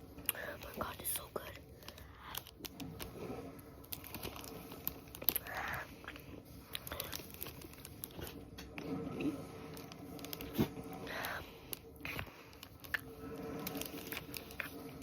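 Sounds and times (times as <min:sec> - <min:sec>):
soft crinkle: 0:00.0 - 0:15.0.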